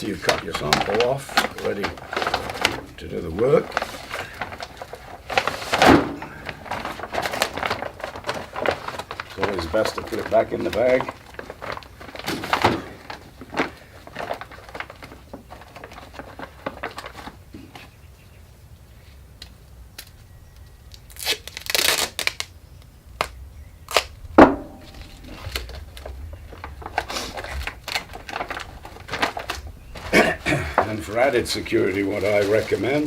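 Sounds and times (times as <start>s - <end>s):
plastic bag rustling and crinkling: 0.0s - 18.0s, 21.0s - 22.6s, 23.2s - 33.0s
sharp knock: 24.4s - 25.2s.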